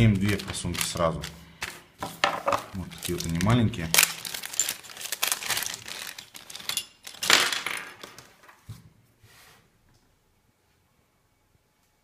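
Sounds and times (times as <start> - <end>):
packaging rustling and crinkling: 0.0 - 8.4.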